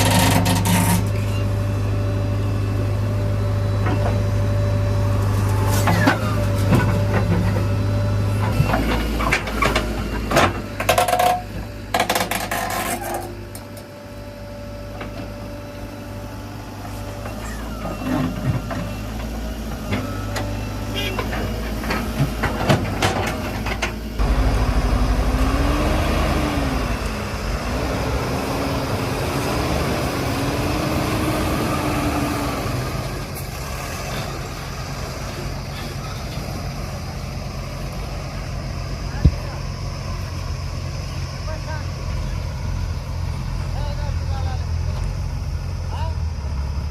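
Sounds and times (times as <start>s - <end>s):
diesel engine running under load: 0.0s - 46.9s
metal clanks and knocks: 8.4s - 13.7s
wavering whine: 24.2s - 32.3s.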